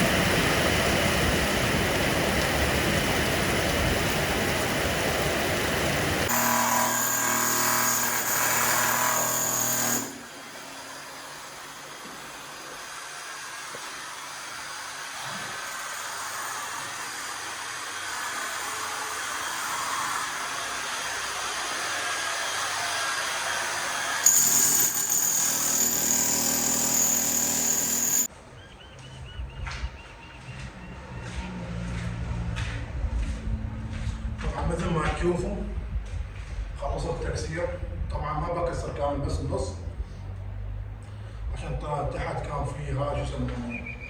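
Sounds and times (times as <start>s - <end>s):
power tool high whine: 4.2s - 28.3s.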